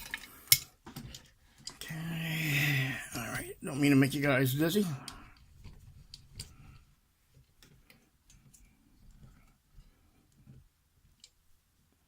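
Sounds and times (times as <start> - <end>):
faint clicks and light knocks: 5.1 - 12.0.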